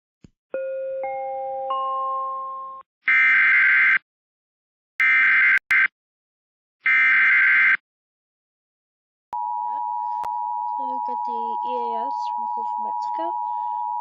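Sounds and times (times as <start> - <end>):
chime: 0.6 - 2.8, 9.4 - 14.0.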